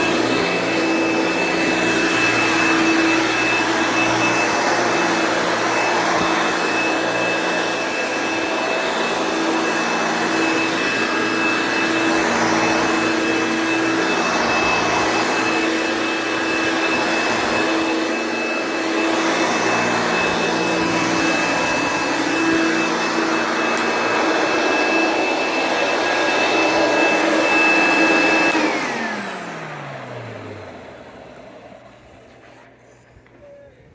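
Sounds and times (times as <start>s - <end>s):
vacuum motor spinning down: 0.0s - 32.5s
vacuum cleaner whining: 0.0s - 33.9s.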